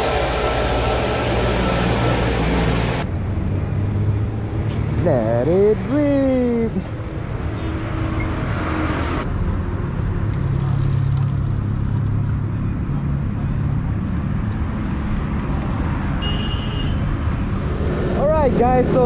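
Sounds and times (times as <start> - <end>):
vehicle engine running: 0.0 - 3.1
road and traffic noise: 0.0 - 19.0.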